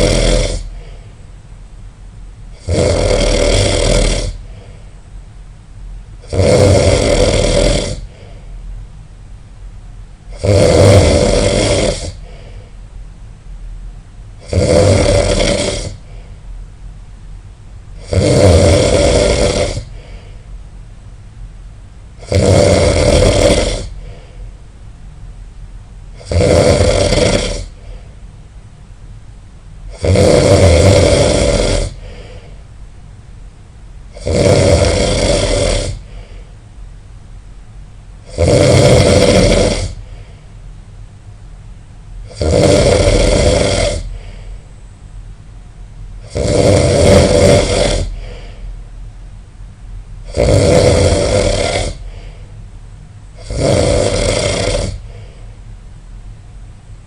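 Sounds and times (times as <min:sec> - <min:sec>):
person snoring loudly: 0:00.0 - 0:00.9, 0:02.5 - 0:04.5, 0:06.2 - 0:08.3, 0:10.3 - 0:12.5, 0:14.4 - 0:16.2, 0:18.0 - 0:20.3, 0:22.2 - 0:24.2, 0:26.2 - 0:28.0, 0:29.9 - 0:32.5, 0:34.1 - 0:36.4, 0:38.2 - 0:40.2, 0:42.3 - 0:44.5, 0:46.2 - 0:48.6, 0:50.2 - 0:52.4, 0:53.4 - 0:55.4.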